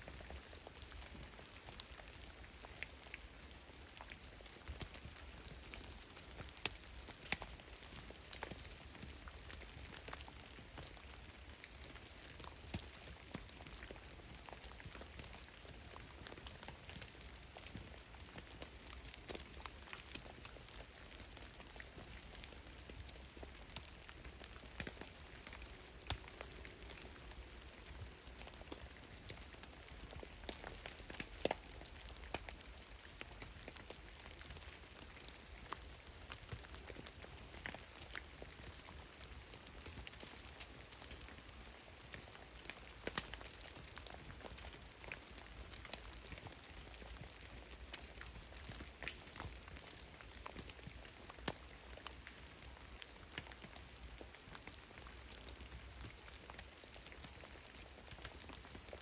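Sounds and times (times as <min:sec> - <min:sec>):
faint steady hiss: 0:00.0 - 0:59.0
meltwater dripping: 0:16.8 - 0:52.1.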